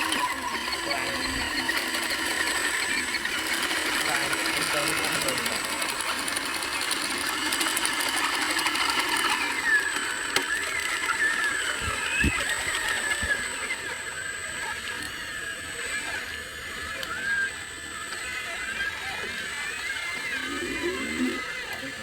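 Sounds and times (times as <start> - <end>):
small electric motor whining: 0.0 - 22.0.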